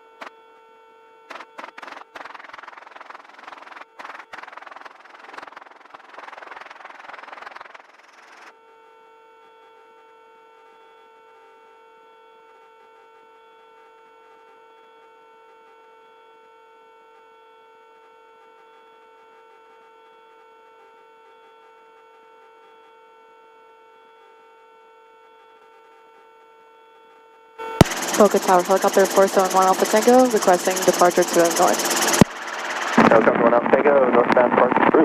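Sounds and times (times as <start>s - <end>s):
electrical hum on intercom: 1.2s - 8.4s, 27.6s - 35.0s.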